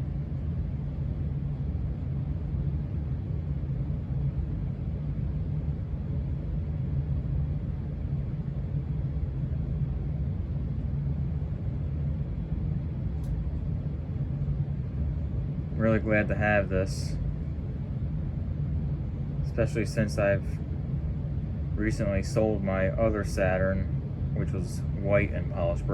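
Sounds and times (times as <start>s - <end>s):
ceiling fan turning: 0.0s - 25.9s
hvac system rumble: 0.0s - 25.9s.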